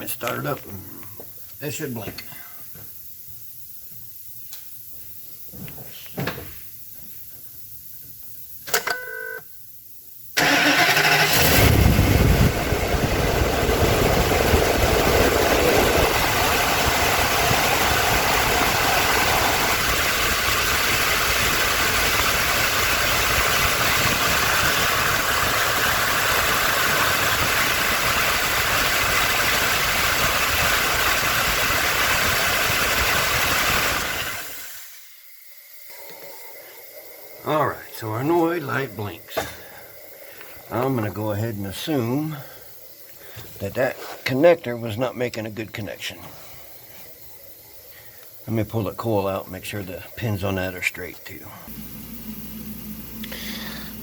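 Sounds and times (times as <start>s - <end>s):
engine cranking and idling: 10.4s - 35.0s, 51.7s - 54.0s.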